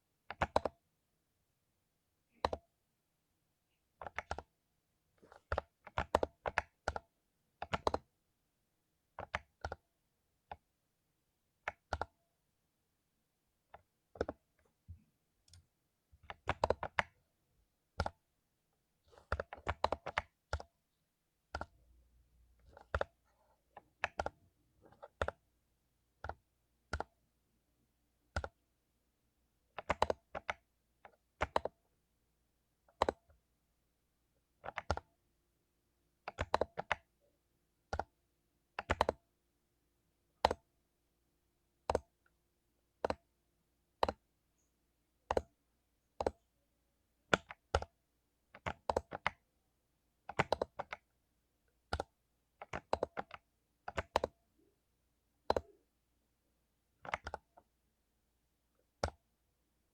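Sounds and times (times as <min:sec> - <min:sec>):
typing on mechanical keyboard: 0:00.3 - 0:00.8, 0:02.3 - 0:02.7, 0:04.0 - 0:04.5, 0:05.3 - 0:08.1, 0:09.2 - 0:09.8, 0:11.7 - 0:12.2, 0:13.7 - 0:14.5, 0:16.3 - 0:17.2, 0:19.1 - 0:20.7, 0:22.6 - 0:23.2, 0:23.8 - 0:25.4, 0:26.2 - 0:27.2, 0:29.7 - 0:31.8, 0:32.8 - 0:33.4, 0:34.6 - 0:35.1, 0:36.3 - 0:37.1, 0:38.8 - 0:39.2, 0:43.0 - 0:43.3, 0:44.0 - 0:44.2, 0:45.2 - 0:45.6, 0:46.2 - 0:46.4, 0:47.3 - 0:49.4, 0:50.2 - 0:51.1, 0:51.8 - 0:54.4, 0:55.4 - 0:55.8, 0:57.0 - 0:57.7.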